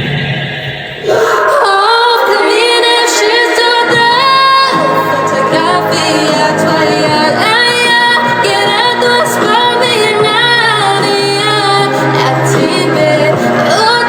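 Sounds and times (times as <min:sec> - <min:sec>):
woman singing: 0:01.0 - 0:14.0
backing track music: 0:02.5 - 0:14.0.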